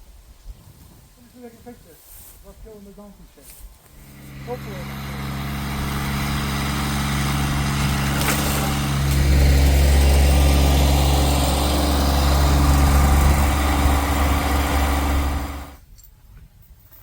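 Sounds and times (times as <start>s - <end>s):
vehicle engine running: 3.9s - 15.8s.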